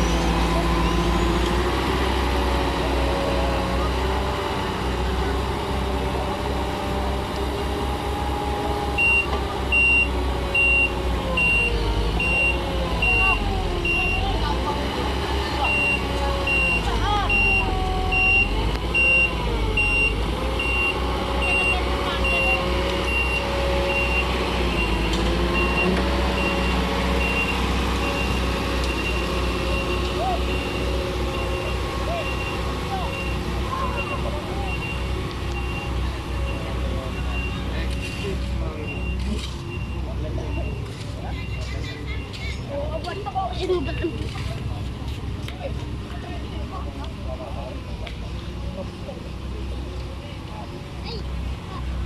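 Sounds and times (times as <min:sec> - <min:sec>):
low engine rumble: 0:00.0 - 0:52.0
reversing alarm beeping: 0:09.0 - 0:14.4, 0:15.6 - 0:37.6.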